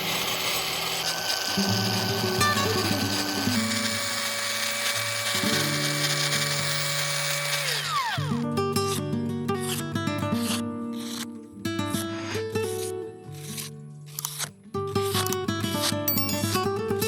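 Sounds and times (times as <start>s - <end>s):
angle grinder whining: 0.0s - 8.4s.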